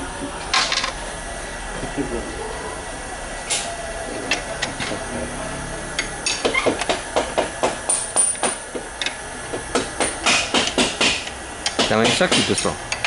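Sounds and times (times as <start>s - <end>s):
hammer knocks on metal: 6.4s - 8.9s, 9.5s - 12.6s.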